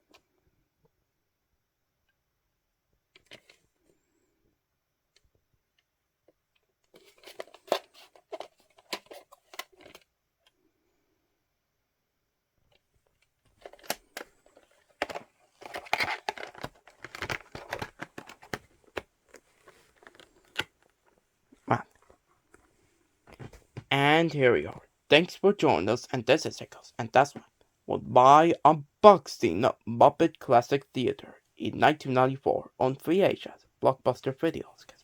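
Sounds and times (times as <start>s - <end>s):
plastic rustling: 13.1s - 23.8s.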